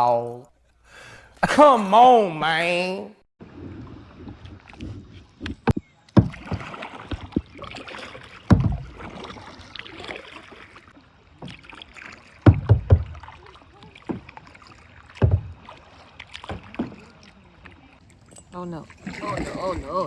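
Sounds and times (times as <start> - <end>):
paddles splashing through water: 3.4 - 20.0
heavy thumps: 5.4 - 7.5, 8.5 - 9.1, 12.5 - 13.3, 15.2 - 15.8.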